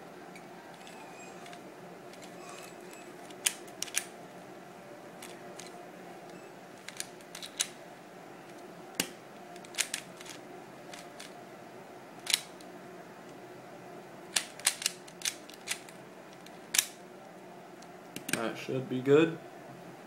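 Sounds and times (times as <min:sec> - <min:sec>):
speed cube plastic clicks: 0:03.2 - 0:04.1, 0:09.0 - 0:11.3, 0:12.2 - 0:12.5, 0:14.4 - 0:16.9.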